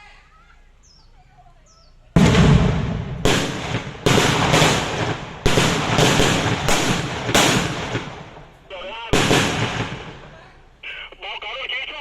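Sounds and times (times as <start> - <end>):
loud echoing gunshots and blasts: 2.2 - 10.4.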